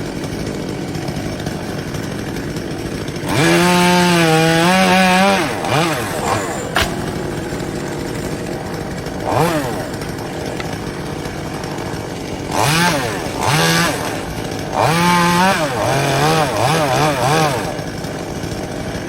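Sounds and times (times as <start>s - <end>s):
chainsaw engine idling and revving: 0.0s - 19.0s.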